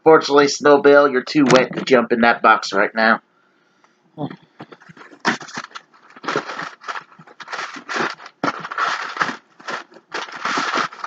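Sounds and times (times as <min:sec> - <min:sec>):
packing material rustling in box: 0:04.7 - 0:11.0.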